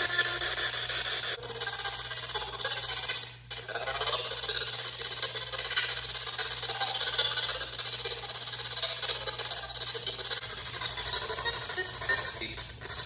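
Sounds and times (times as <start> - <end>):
chopped broadcast fragments: 0.0 - 1.4
choppy radio static: 0.0 - 1.4, 9.6 - 13.0
steady low hum: 0.0 - 13.0.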